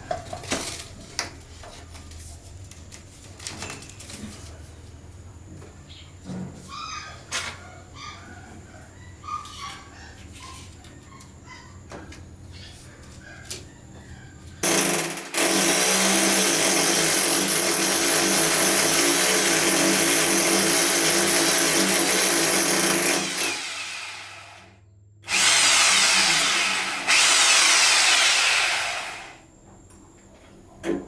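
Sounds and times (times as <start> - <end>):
handheld power drill running: 14.6 - 29.4.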